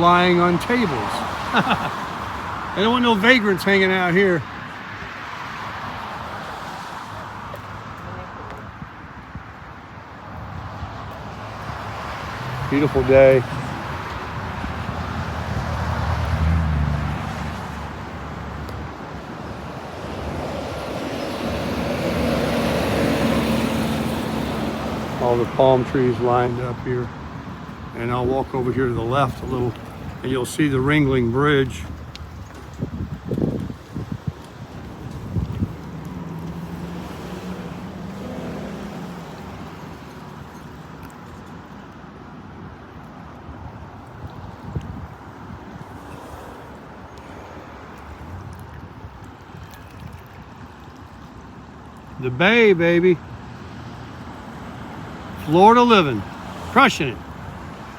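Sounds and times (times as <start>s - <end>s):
vehicle rumble: 0.0s - 41.9s
cars passing: 0.0s - 57.9s.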